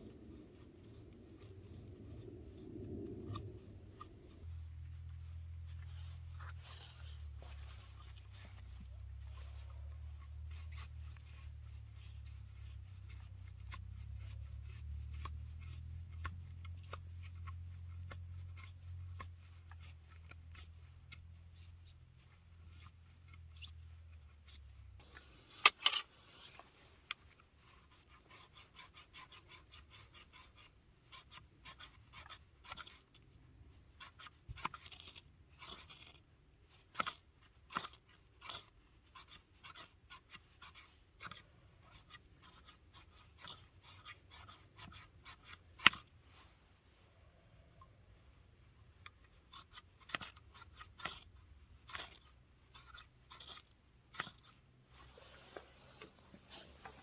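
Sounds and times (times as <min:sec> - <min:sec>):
low steady hum: 0:00.0 - 0:28.0
scratching and rasping strokes: 0:00.0 - 0:57.0.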